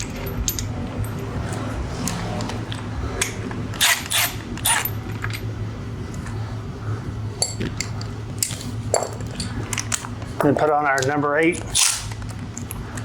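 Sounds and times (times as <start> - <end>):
metal parts and tools clinking: 0.0 - 5.5
low steady hum: 0.0 - 13.0.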